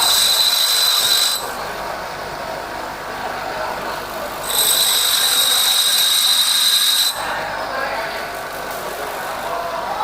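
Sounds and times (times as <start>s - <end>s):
grinder high whine: 0.0s - 1.6s, 4.4s - 7.3s
grinder steady hiss: 0.0s - 1.7s, 4.3s - 7.3s.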